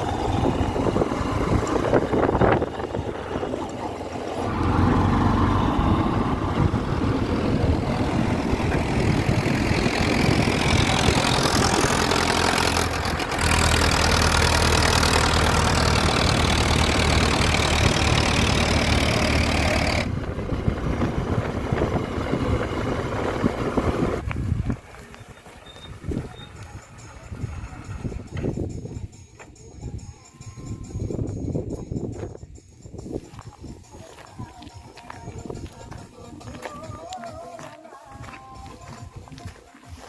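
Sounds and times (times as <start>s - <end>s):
diesel engine under load: 0.0s - 29.2s.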